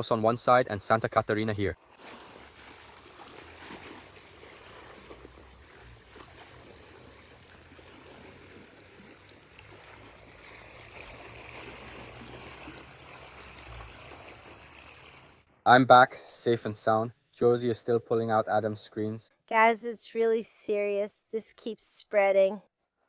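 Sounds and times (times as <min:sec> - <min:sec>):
river water flowing: 0:01.8 - 0:15.5.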